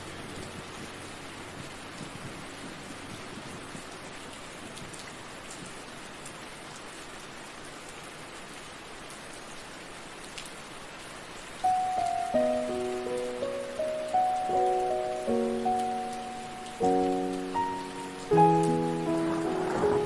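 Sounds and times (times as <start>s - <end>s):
steady rain hiss: 0.0s - 20.0s
raindrop ticks: 0.3s - 6.9s, 11.6s - 20.0s
sustained music notes: 11.7s - 20.0s.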